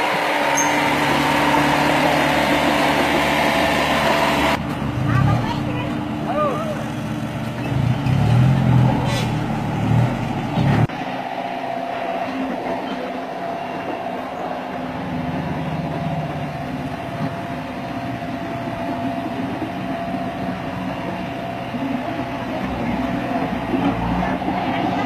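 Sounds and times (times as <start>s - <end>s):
earthmoving machine engine rumbling: 0.0s - 25.0s
thin steady whine: 10.3s - 25.0s.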